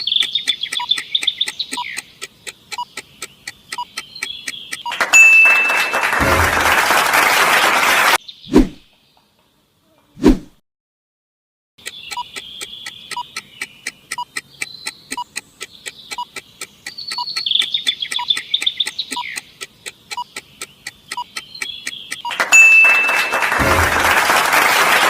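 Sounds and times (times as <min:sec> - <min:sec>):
soft beeps: 0:00.0 - 0:06.6, 0:11.8 - 0:16.4, 0:17.1 - 0:23.7
fast even ticking: 0:00.0 - 0:06.8, 0:11.8 - 0:24.6.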